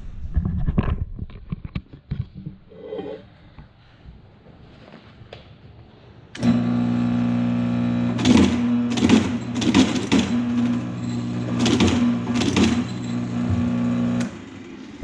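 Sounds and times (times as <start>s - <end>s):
electric stitcher motor hum: 6.4s - 15.0s
loud mechanical stapling strokes: 8.2s - 13.2s.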